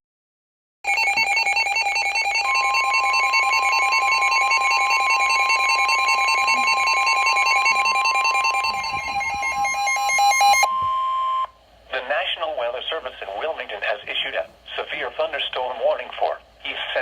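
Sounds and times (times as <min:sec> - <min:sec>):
rapidly alternating electronic beeping: 0:00.9 - 0:11.5
steady high alarm tone: 0:00.9 - 0:11.5.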